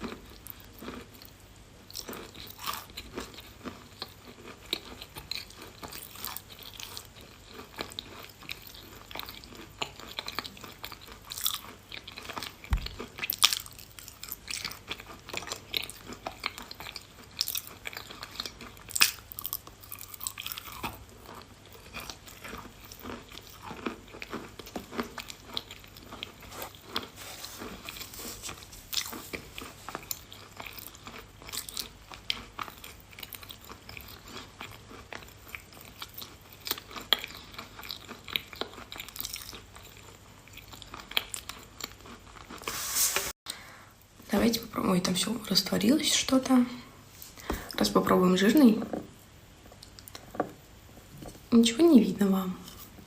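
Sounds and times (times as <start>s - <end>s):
chewing crunchy chalk: 2.0s - 43.4s.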